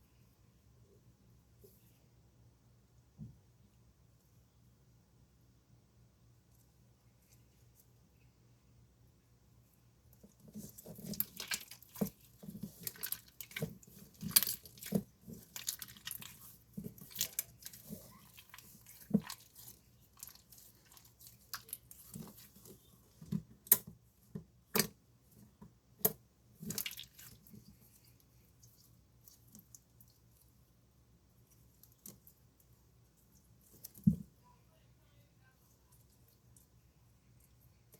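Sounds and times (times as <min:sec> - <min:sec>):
slime squelching: 0:10.2 - 0:34.4.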